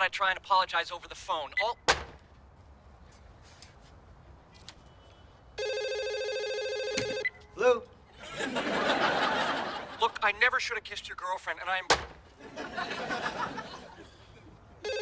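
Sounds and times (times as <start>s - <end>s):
telephone ringing: 5.6s - 7.5s
studio audience laughter: 8.2s - 10.1s, 12.4s - 14.0s.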